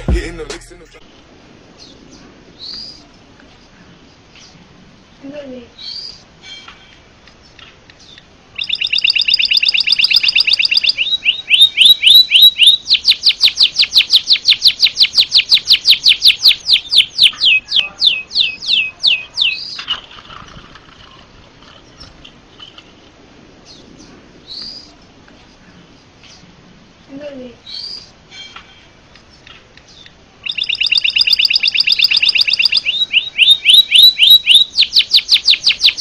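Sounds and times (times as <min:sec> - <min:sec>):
bird singing trills: 0:08.0 - 0:20.0, 0:29.3 - 0:36.0.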